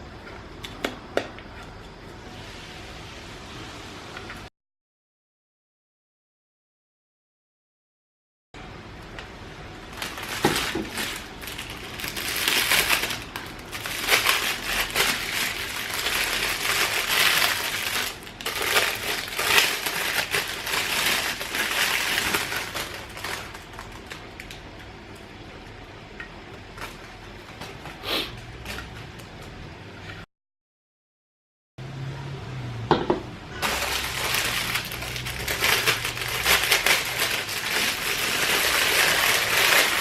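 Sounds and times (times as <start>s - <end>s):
packaging crinkling and rustling: 9.8s - 25.6s, 26.6s - 29.6s, 33.6s - 40.0s.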